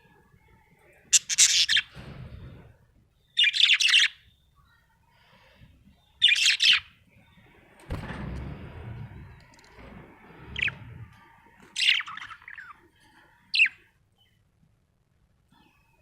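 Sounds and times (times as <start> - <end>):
low rumbling noise: 7.4 - 12.4
budgerigar chirping: 11.8 - 12.8.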